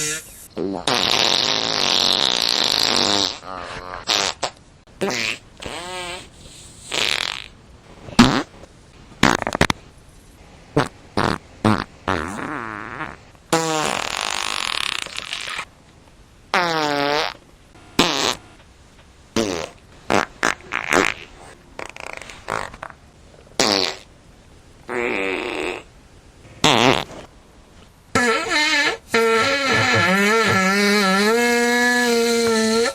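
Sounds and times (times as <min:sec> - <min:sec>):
fart sound effects: 0:00.0 - 0:06.3, 0:06.9 - 0:07.5, 0:08.2 - 0:08.5, 0:09.2 - 0:09.8, 0:10.8 - 0:15.7, 0:16.5 - 0:17.4, 0:18.0 - 0:18.6, 0:19.4 - 0:23.0, 0:23.6 - 0:24.1, 0:24.9 - 0:27.3, 0:28.1 - 0:32.9.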